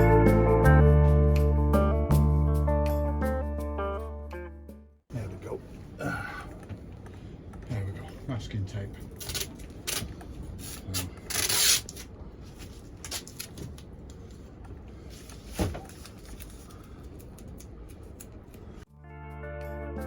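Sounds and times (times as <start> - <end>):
music: 0.0 - 5.0, 18.9 - 20.0
masking tape pulled off roll: 9.2 - 12.1.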